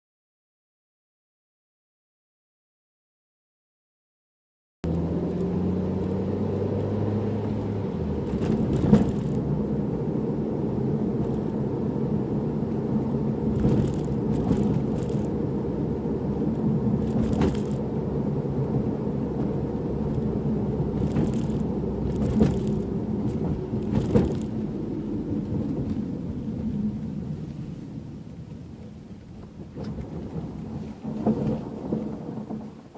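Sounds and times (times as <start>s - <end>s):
car cabin road rumble: 4.8s - 32.9s
clicks and knocks over bumps: 8.2s - 9.5s, 11.2s - 11.6s, 13.5s - 15.4s, 17.0s - 17.9s, 18.8s - 24.6s.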